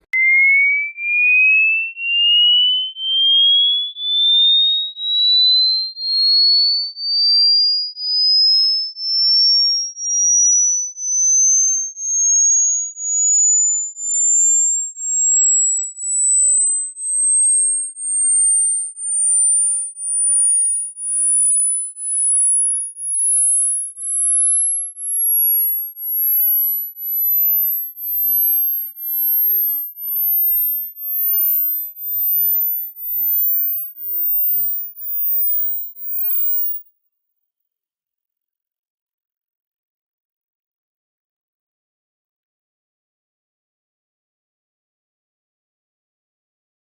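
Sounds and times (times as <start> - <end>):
rising sine tone beeps: 0.1 - 36.9.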